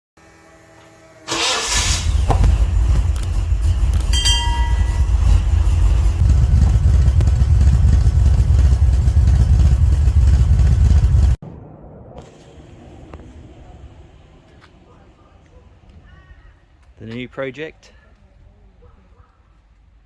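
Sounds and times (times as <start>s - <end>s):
car engine starting and rumbling: 1.3s - 11.4s.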